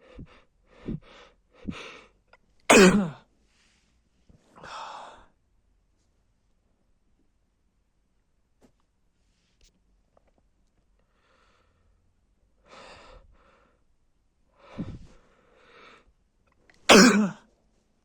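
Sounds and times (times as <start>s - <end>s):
man sneezing: 2.7s - 3.2s, 16.9s - 17.4s.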